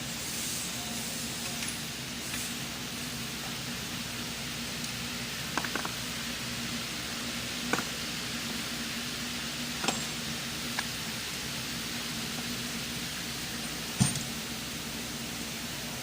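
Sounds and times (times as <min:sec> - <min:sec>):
steady hiss: 0:00.0 - 0:16.0
light metallic clinks: 0:13.6 - 0:14.4.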